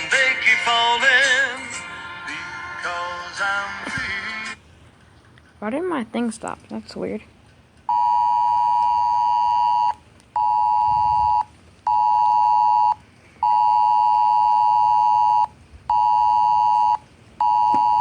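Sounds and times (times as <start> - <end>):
phone emergency alert tone: 7.9 - 18.0.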